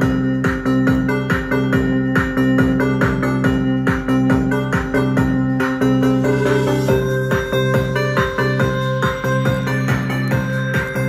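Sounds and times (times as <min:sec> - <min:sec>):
music with fast beat: 0:00.0 - 0:11.0.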